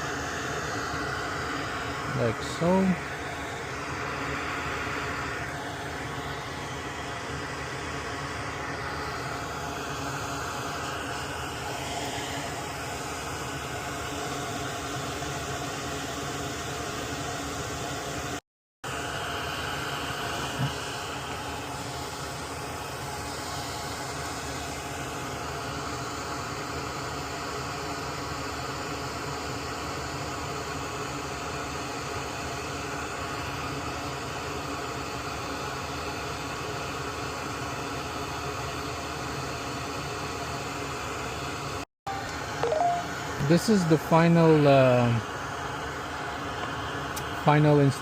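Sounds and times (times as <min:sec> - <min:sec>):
fan-driven machine whooshing: 0:00.0 - 0:28.2, 0:42.4 - 0:48.0.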